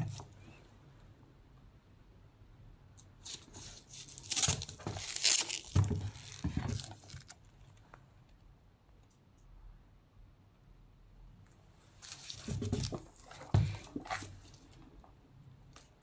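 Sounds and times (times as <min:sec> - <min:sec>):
packaging rustling and tearing: 0:03.2 - 0:07.5, 0:12.0 - 0:13.4.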